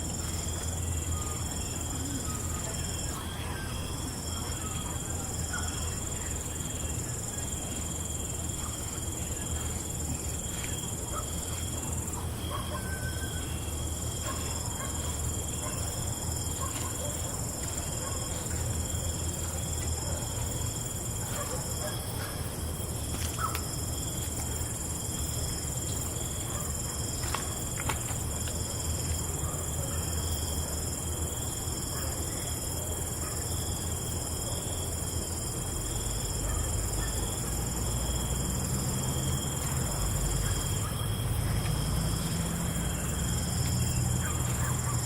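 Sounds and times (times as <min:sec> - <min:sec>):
crickets trilling: 0:00.0 - 0:45.0.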